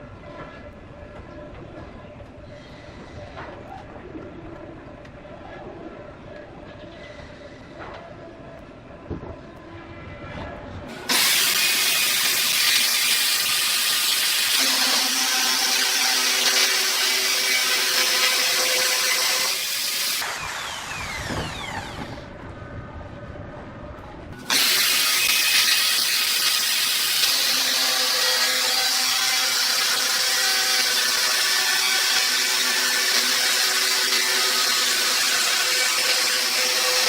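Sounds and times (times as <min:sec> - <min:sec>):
power drill running: 0:10.9 - 0:22.3, 0:24.4 - 0:37.0.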